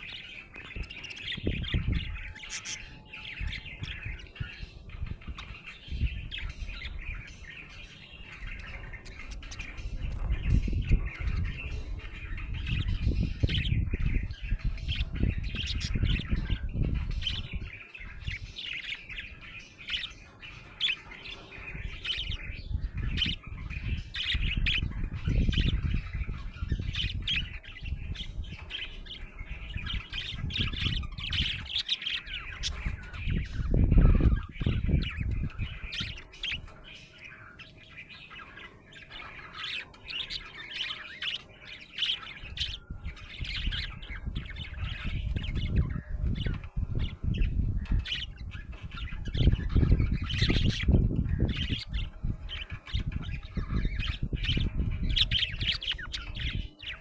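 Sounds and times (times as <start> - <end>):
budgerigar chirping: 0.0 - 57.0.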